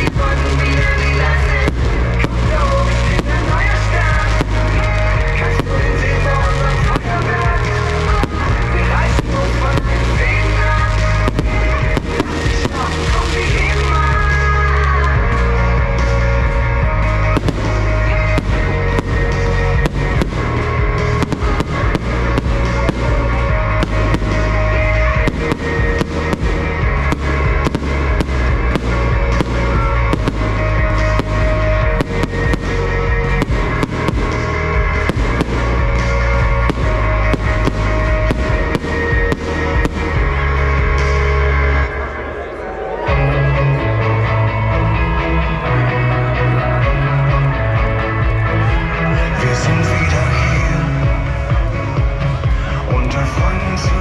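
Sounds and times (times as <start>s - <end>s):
fireworks bursting and crackling: 0.0s - 42.1s
pop music with heavy bass: 0.0s - 42.4s, 43.0s - 54.0s.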